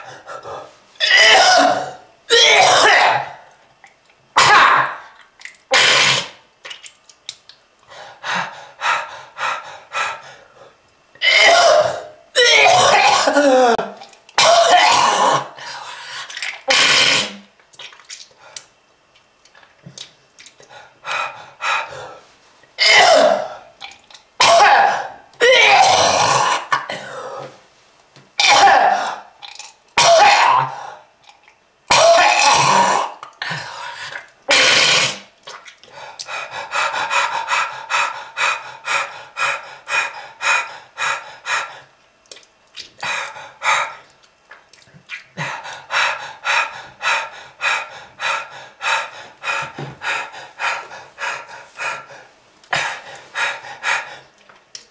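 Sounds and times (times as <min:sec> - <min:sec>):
person coughing: 0:01.0 - 0:03.3, 0:11.2 - 0:15.5, 0:22.8 - 0:23.6, 0:24.4 - 0:27.5.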